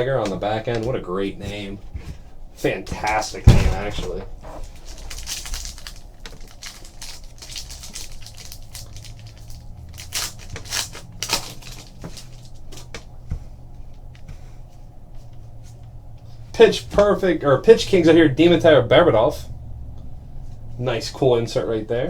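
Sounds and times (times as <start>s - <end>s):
card wrappers crinkling and snapping: 3.1s - 13.1s.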